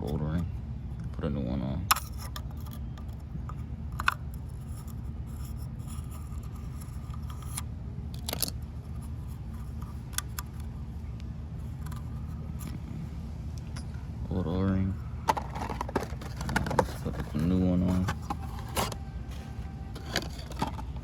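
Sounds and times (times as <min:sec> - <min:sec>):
steady low hum: 0:00.0 - 0:21.0
light clicks and scrapes: 0:01.9 - 0:10.8, 0:15.2 - 0:21.0.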